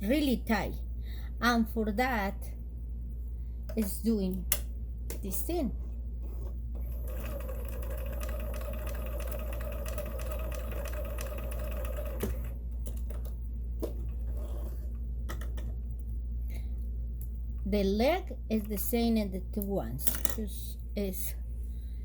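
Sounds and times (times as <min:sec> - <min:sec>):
sewing machine running: 0:06.8 - 0:12.6.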